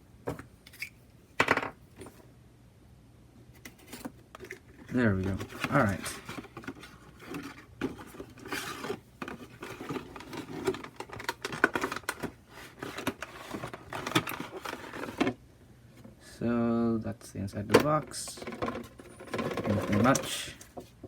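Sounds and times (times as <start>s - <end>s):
cardboard and plastic packaging rustling: 3.7s - 15.4s, 17.9s - 21.0s.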